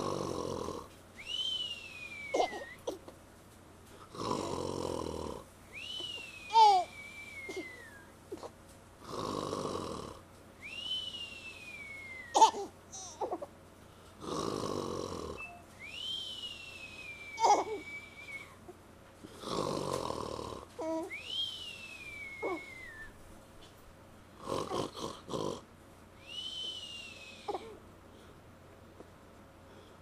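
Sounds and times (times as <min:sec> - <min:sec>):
man snoring: 0:00.0 - 0:00.9, 0:04.1 - 0:05.5, 0:09.0 - 0:10.2, 0:14.2 - 0:15.4, 0:19.3 - 0:20.7, 0:24.4 - 0:25.6
rising and falling whistle: 0:01.2 - 0:02.3, 0:10.6 - 0:12.4, 0:15.4 - 0:18.5, 0:21.1 - 0:23.2, 0:26.2 - 0:27.5.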